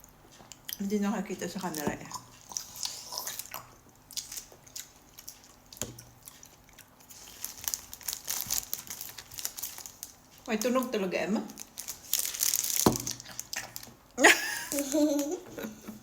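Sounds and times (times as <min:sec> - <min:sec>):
chewing strawberries: 0:01.6 - 0:10.5, 0:11.5 - 0:14.0
wet mouth sounds: 0:01.8 - 0:07.3.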